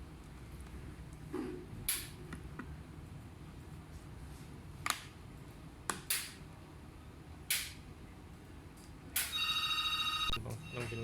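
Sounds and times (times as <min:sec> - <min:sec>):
electronic tone: 0:09.3 - 0:11.0.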